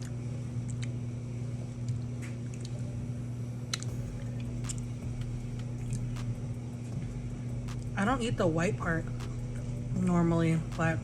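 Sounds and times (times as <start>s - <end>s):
wet eating sounds: 0.0s - 1.0s, 1.7s - 3.0s, 3.7s - 7.0s
low hum: 0.0s - 11.0s.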